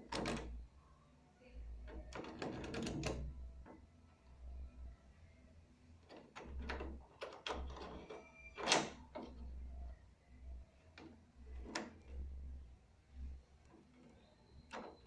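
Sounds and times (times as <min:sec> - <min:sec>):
key turning in door lock: 0:00.0 - 0:00.5, 0:01.9 - 0:03.8, 0:06.0 - 0:09.4, 0:11.0 - 0:12.2.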